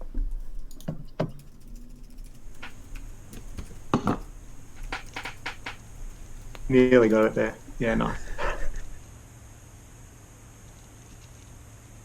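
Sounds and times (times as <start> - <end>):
sharp clicks and taps: 0.0 - 9.0.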